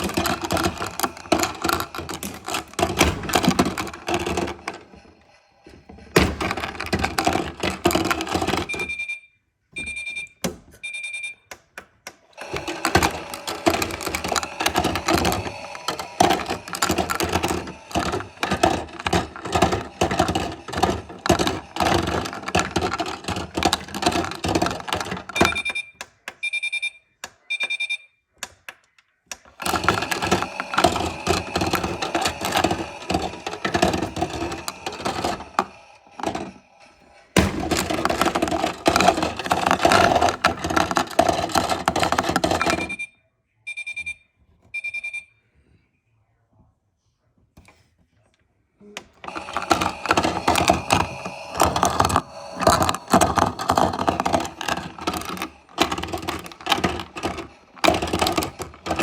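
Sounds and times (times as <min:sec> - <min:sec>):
rapid clicking and rattling: 0:00.0 - 0:05.2, 0:12.4 - 0:25.6, 0:29.5 - 0:42.9, 0:49.2 - 0:59.0
washing machine beeps: 0:08.3 - 0:11.5, 0:25.0 - 0:28.3, 0:42.6 - 0:45.6.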